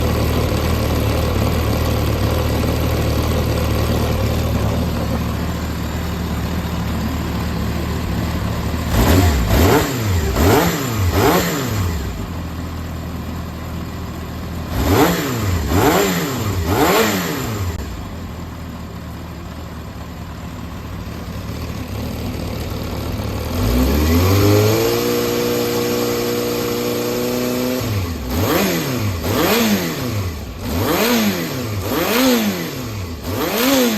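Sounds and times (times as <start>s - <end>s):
motorcycle engine idling: 0.0s - 33.9s
engine revving in throttle blips: 8.8s - 12.3s, 14.7s - 18.0s, 23.5s - 33.9s.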